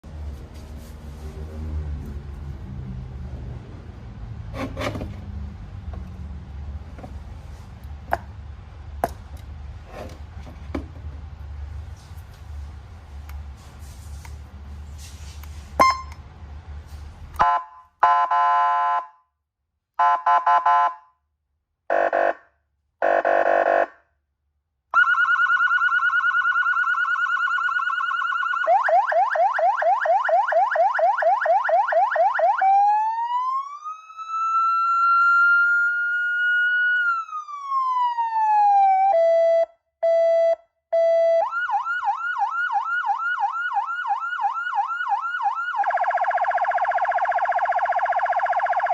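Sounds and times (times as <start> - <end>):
electronic siren tones: 25.0 - 48.9.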